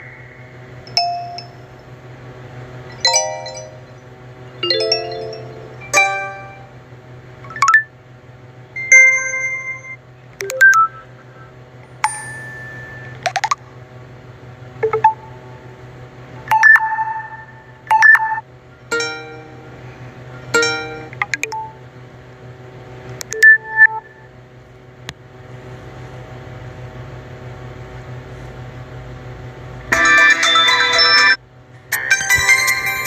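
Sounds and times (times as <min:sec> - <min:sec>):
electronic ringtone chimes and beeps: 0:03.0 - 0:03.9, 0:04.6 - 0:06.6, 0:08.8 - 0:11.0, 0:16.5 - 0:18.4.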